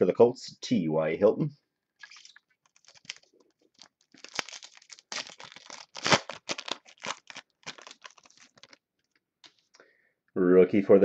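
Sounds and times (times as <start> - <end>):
foil wrapper crinkling and tearing: 2.0 - 9.7.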